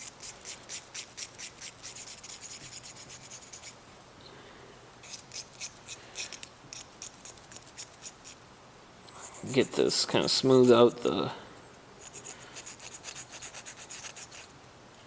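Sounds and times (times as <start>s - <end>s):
needle file scraping thin steel: 0.0s - 3.8s, 5.0s - 8.4s, 9.2s - 10.9s, 12.0s - 14.5s.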